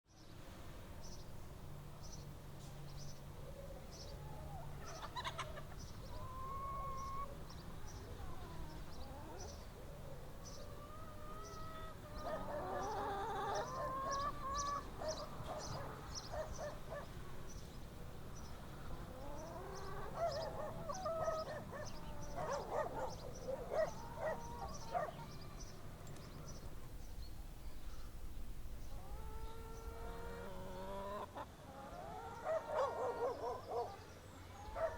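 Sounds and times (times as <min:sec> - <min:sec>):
chickens clucking: 0:04.8 - 0:09.6, 0:10.6 - 0:17.7, 0:18.6 - 0:25.7, 0:28.9 - 0:33.9.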